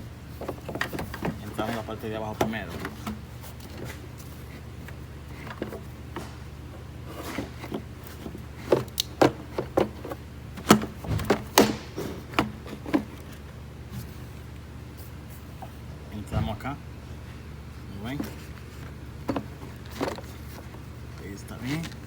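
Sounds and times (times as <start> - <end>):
steady low hum: 0.0 - 22.0
plastic parts knocking and clicking: 0.4 - 4.0, 7.2 - 13.4, 18.2 - 20.8.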